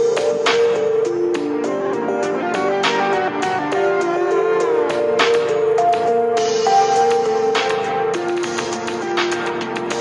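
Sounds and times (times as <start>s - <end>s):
percussive beat: 4.8s - 10.0s.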